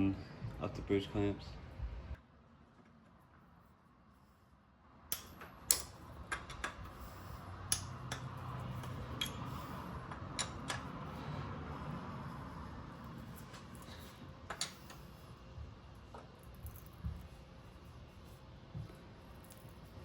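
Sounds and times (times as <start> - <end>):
hand tools clicking on bolts: 5.1 - 7.0, 7.6 - 10.9.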